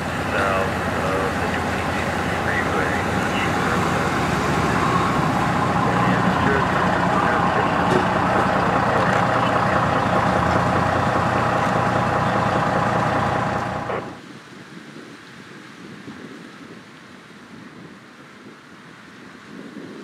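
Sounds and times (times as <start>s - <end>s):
large engine idling: 0.0s - 14.2s.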